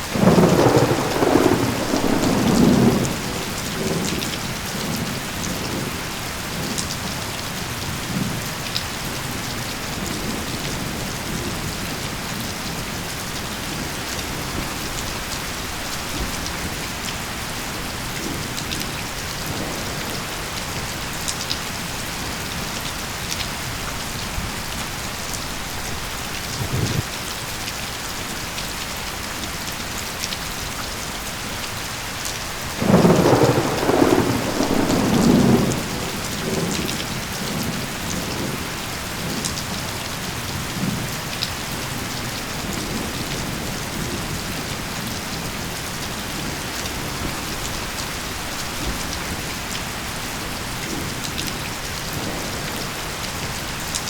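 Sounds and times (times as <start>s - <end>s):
steady rain falling: 0.0s - 54.0s
rumble of thunder: 0.2s - 6.8s, 26.0s - 27.1s, 32.8s - 49.5s.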